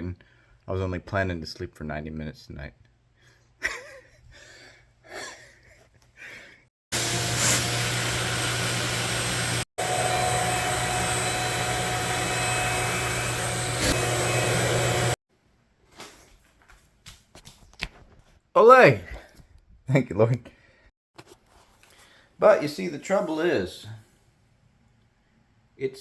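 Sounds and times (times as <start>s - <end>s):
shop vac running: 6.9s - 15.2s.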